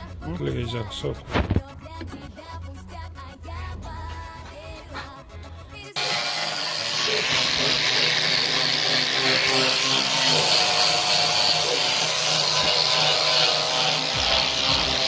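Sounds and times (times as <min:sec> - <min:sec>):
power tool whirring: 0:06.0 - 0:15.0.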